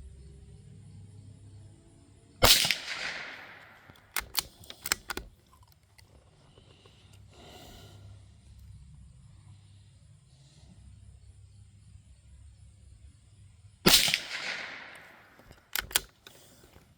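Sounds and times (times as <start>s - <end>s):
rifle shot echoing: 2.4s - 5.3s, 13.9s - 16.5s
rifle bolt metallic clicks: 2.4s - 6.1s, 13.9s - 16.8s.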